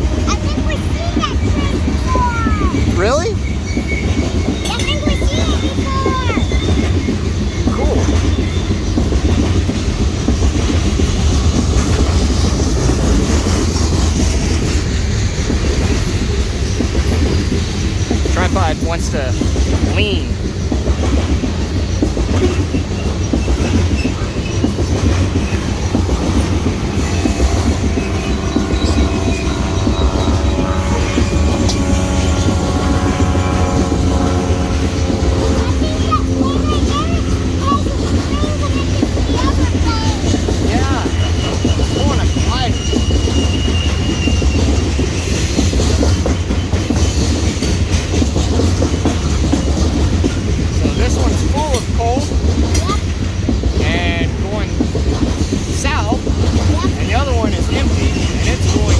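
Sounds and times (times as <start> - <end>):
freight train rumbling past: 0.0 - 58.9
wheels clacking over rail joints: 0.0 - 58.9
high wheel squeal: 1.2 - 9.3, 21.9 - 33.4, 34.7 - 48.0.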